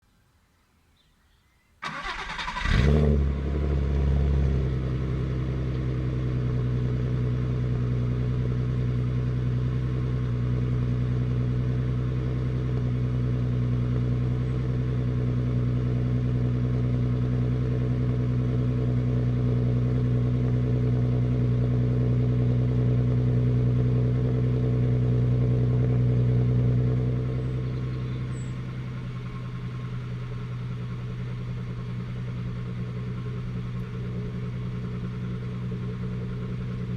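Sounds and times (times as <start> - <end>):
car engine revving and idling: 1.9 - 36.9.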